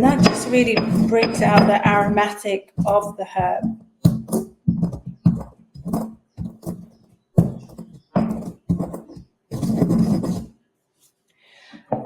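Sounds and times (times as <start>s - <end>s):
peppercorns being ground by hand: 0.0s - 3.5s.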